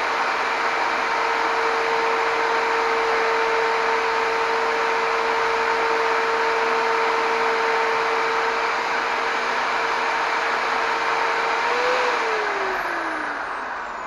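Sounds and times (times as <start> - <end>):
power tool motor whining: 10.8 - 14.0.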